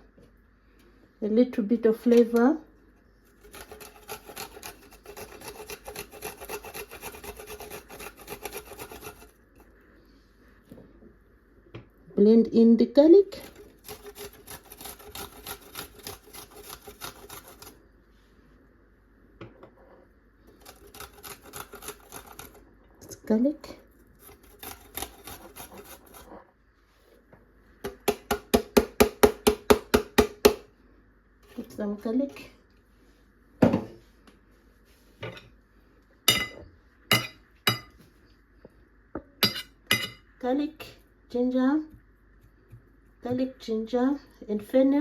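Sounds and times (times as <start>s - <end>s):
garlic being grated: 3.3s - 9.6s, 13.3s - 17.8s, 20.5s - 22.6s, 24.2s - 26.4s.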